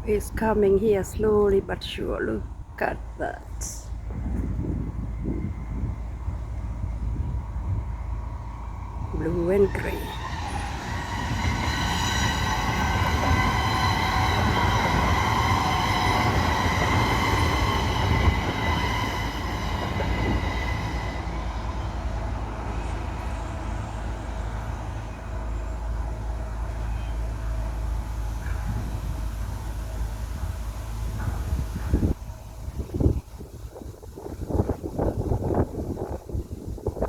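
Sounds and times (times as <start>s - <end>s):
large vehicle low rumble: 0.0s - 37.0s
high whining squeal: 5.1s - 30.2s.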